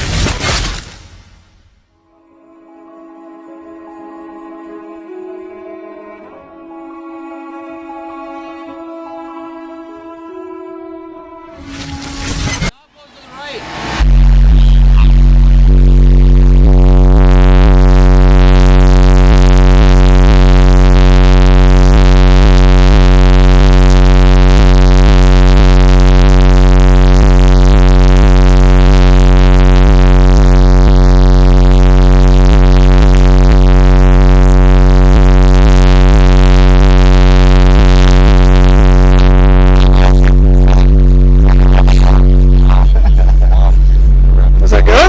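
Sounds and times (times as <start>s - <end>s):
loud distorted subwoofer bass: 14.0s - 45.0s.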